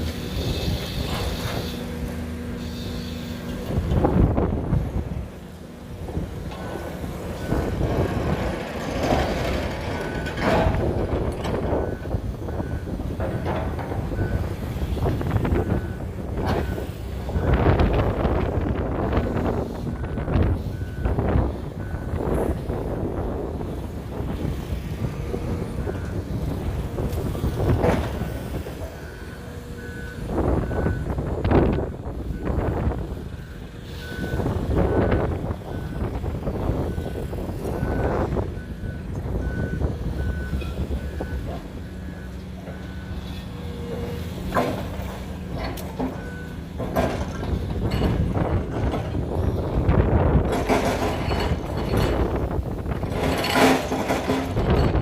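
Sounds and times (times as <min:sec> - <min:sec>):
construction machinery rumbling: 0:00.0 - 0:55.0.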